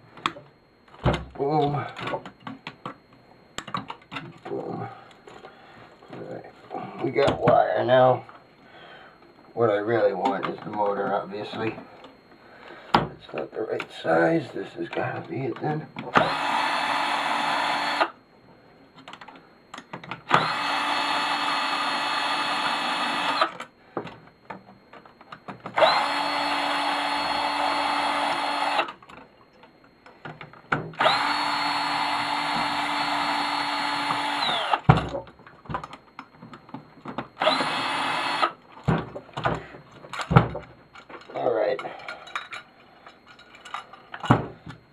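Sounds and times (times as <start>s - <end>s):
cordless drill running: 16.2s - 18.2s, 20.3s - 23.6s, 25.8s - 28.9s, 31.0s - 34.9s, 37.4s - 38.6s
knocks and clatter of handling: 34.9s - 37.3s, 38.8s - 44.8s.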